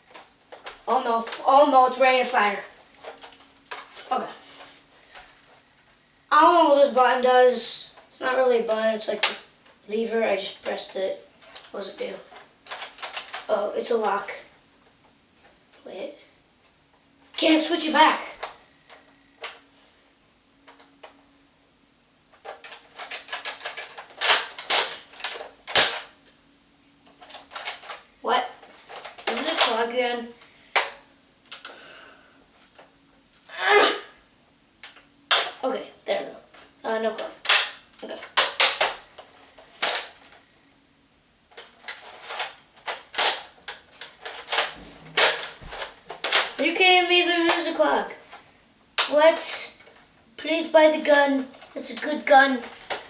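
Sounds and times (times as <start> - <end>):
plastic toy blaster clicks: 22.6 - 26.1, 37.4 - 39.0, 42.3 - 46.6.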